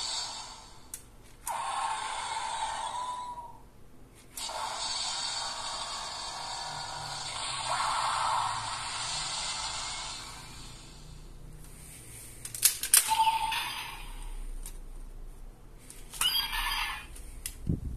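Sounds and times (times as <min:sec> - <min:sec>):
electronic toy sound effects: 0:13.0 - 0:14.4, 0:16.2 - 0:17.2.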